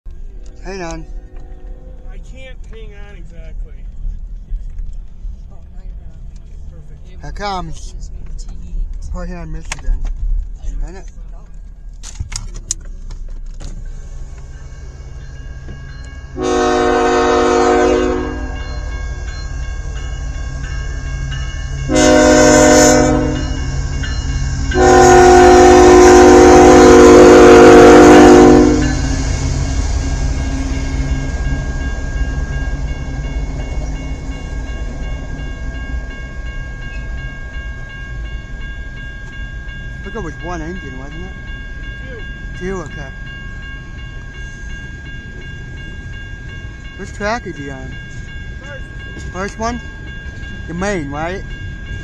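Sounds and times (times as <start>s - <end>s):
locomotive rumble: 0.1s - 52.0s
train air horn blasts: 16.3s - 18.7s, 21.9s - 23.6s, 24.7s - 31.0s.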